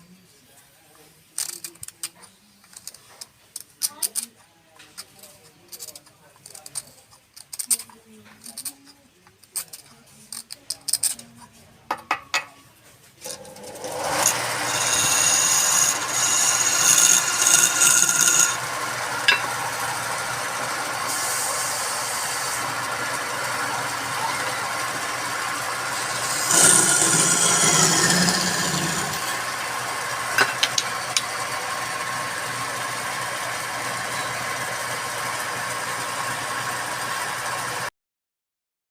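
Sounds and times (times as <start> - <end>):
wood lathe running: 13.2 - 37.9.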